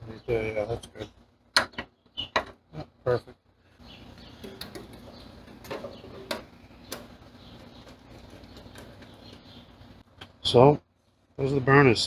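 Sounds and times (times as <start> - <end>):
faint steady background noise: 0.0 - 12.0
light clicks and knocks of metal parts: 3.9 - 10.0.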